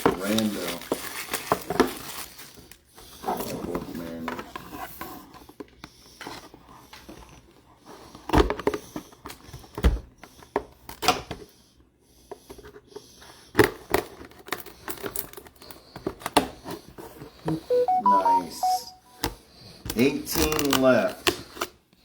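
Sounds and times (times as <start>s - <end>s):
wrappers crinkling and tearing: 0.0s - 2.8s.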